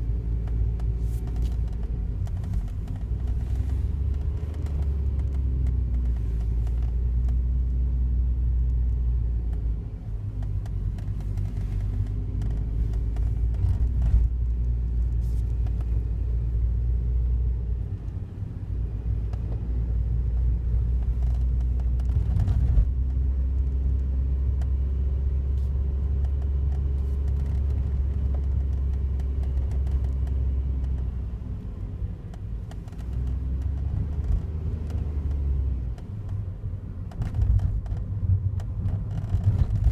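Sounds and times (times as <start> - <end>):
car engine running: 0.0 - 23.4.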